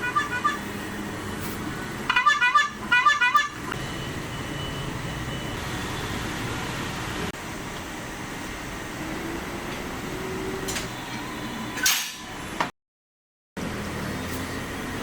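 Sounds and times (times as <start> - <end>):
electronic horn warbling chirps: 0.0 - 0.7, 2.1 - 5.4.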